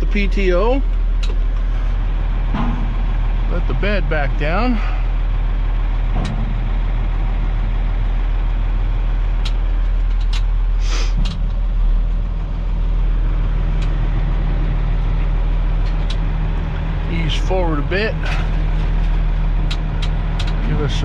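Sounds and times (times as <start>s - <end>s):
diesel engine idling: 0.0s - 21.0s
short sharp hisses: 10.8s - 11.2s.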